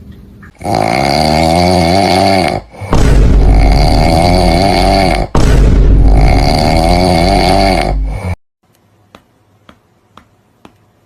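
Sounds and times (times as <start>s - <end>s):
loud snoring: 0.6s - 8.4s.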